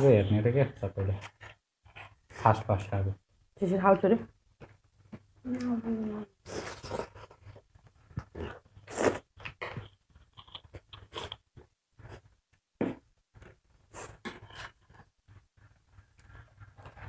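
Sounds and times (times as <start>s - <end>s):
chewing and crunching food: 6.4s - 12.4s.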